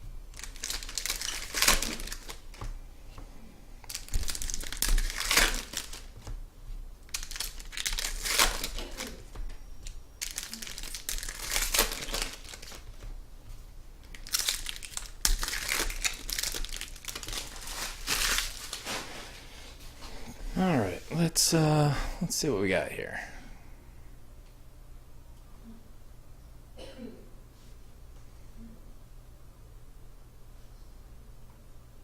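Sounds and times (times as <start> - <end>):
plastic wrapping crinkling and tearing: 0.3 - 2.7, 3.8 - 6.4, 7.0 - 13.1, 14.0 - 19.4.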